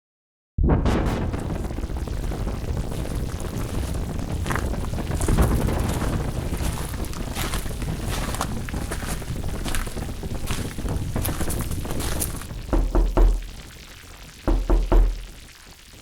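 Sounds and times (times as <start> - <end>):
deep rumble: 0.6 - 13.7
steady rushing noise: 0.7 - 13.6
short crackles: 0.8 - 12.7.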